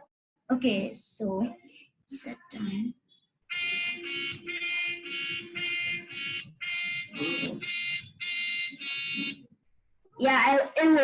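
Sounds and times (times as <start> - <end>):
pulsing electronic alarm tone: 3.5 - 9.5.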